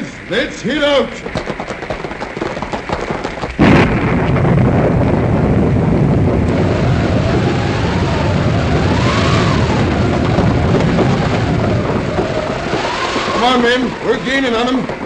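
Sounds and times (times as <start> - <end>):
heavy rain rumble: 1.0 - 15.0
thunder crash: 2.1 - 15.0
rising and falling howl: 6.4 - 14.6.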